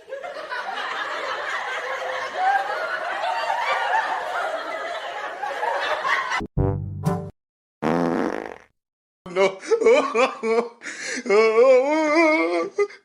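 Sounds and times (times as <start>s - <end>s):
buzzing fart sound effect: 6.6s - 8.8s.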